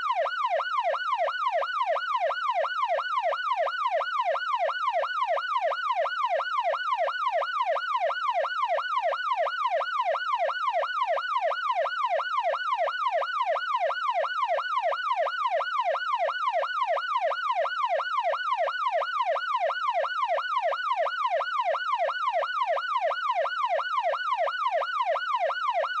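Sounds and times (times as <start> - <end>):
police siren yelping: 0.0 - 26.0.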